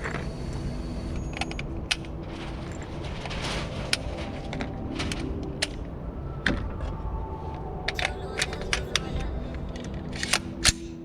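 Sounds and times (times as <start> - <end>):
low background rumble: 0.0 - 11.0.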